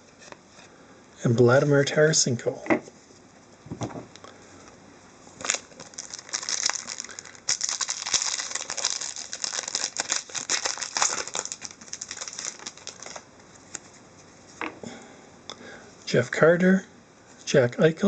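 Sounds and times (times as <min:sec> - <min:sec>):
plastic wrapper crinkling and tearing: 0:05.4 - 0:13.8.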